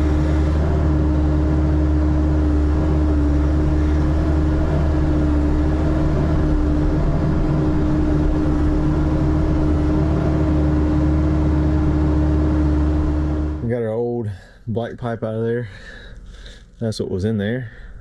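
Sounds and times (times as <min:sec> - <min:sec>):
digging machine engine droning: 0:00.0 - 0:14.2.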